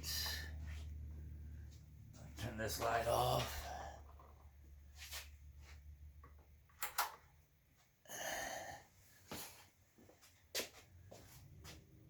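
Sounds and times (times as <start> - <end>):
breathy exhale: 8.1 - 8.9.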